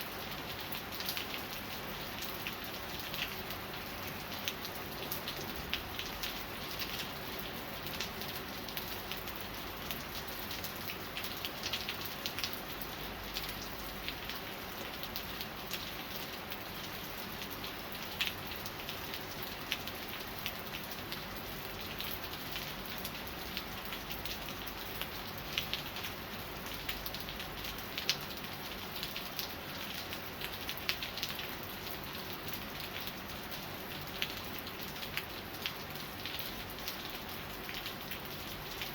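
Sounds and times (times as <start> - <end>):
rain falling: 0.0 - 38.9
raindrops ticking and splattering: 0.0 - 38.9.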